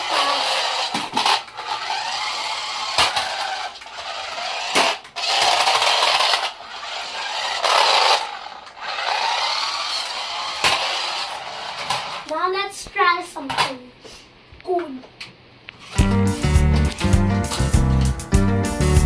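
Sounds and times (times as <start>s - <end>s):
toy car motor whirring: 0.0s - 12.3s, 15.8s - 16.0s.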